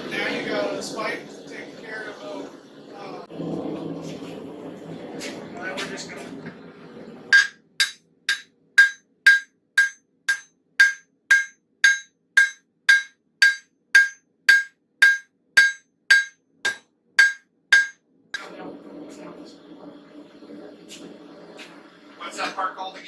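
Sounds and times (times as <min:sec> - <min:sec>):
hammer striking metal on anvil: 0:07.3 - 0:18.0.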